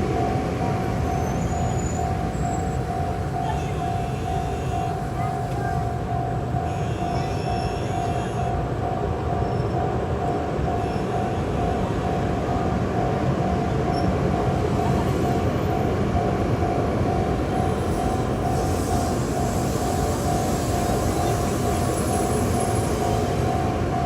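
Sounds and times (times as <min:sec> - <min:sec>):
level crossing warning bell: 0:00.0 - 0:24.0
train rumbling over crossing: 0:00.0 - 0:24.0.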